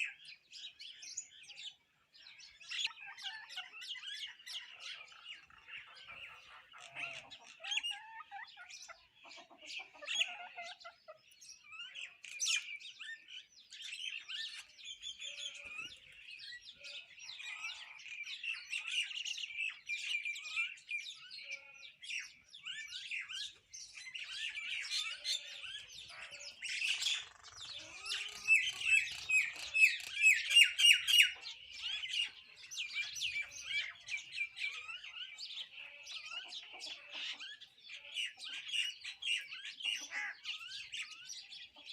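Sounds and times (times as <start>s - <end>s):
birds chirping: 0.0s - 41.9s.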